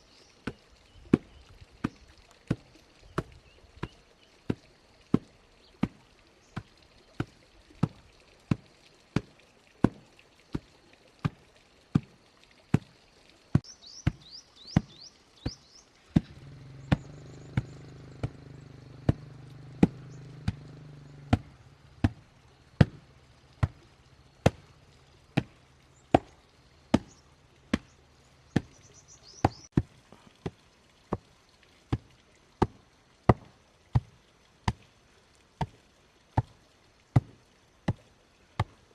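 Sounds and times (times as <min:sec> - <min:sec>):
birds chirping: 0:00.0 - 0:04.5, 0:13.6 - 0:29.8.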